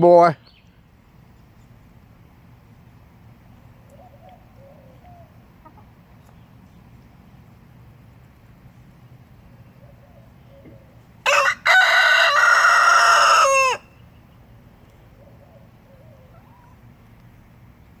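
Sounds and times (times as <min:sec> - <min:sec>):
rooster crowing: 0:11.2 - 0:14.0.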